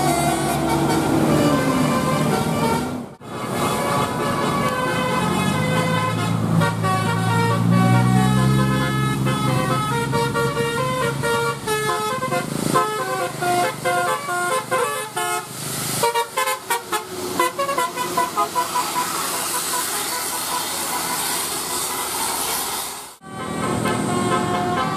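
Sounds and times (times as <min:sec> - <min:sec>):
multi-tone air horn melody: 0:00.0 - 0:24.9
low engine note: 0:18.1 - 0:24.9.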